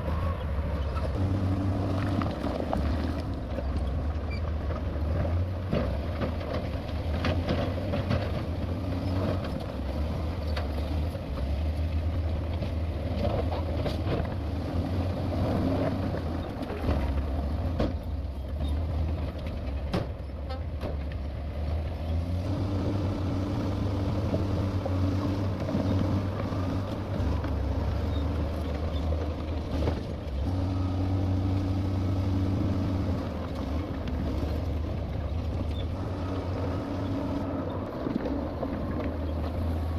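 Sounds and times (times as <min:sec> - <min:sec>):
steady engine tone: 0:00.0 - 0:05.1, 0:22.0 - 0:39.9
deep diesel engine drone: 0:00.0 - 0:39.9.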